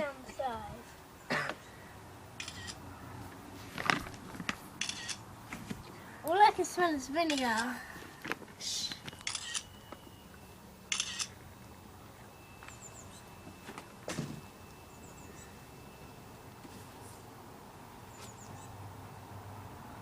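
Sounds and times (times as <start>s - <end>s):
rustling noises: 3.2s - 9.6s, 16.5s - 17.3s
faint bird chirps: 12.2s - 16.3s.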